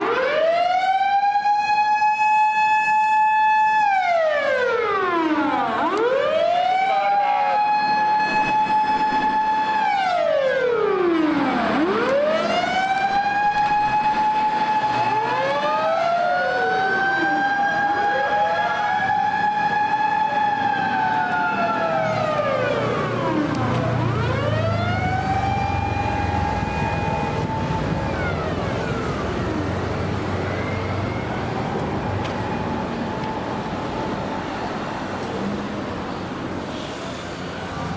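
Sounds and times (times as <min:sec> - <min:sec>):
fire truck siren wailing: 0:00.0 - 0:37.9
low truck engine rumble: 0:19.7 - 0:37.9.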